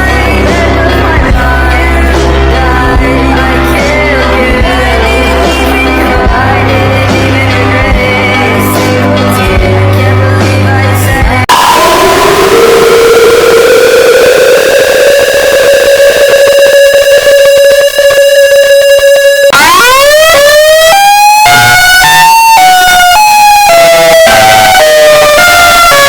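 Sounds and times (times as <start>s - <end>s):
siren holding steady tone: 11.5s - 26.0s
siren stepping between pitches: 11.5s - 26.0s.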